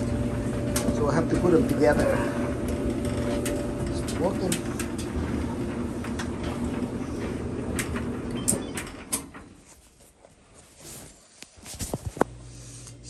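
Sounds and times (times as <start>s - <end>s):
gas dryer drum rumbling: 0.0s - 9.8s.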